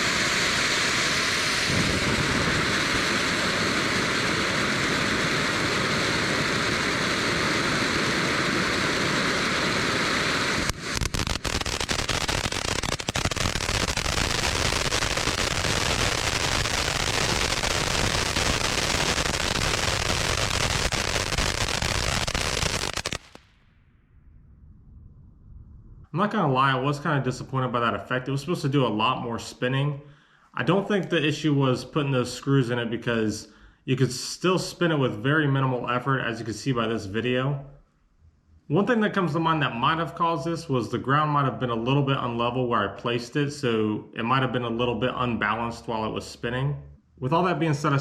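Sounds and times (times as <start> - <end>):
firework fountain spraying sparks: 0.0 - 23.5.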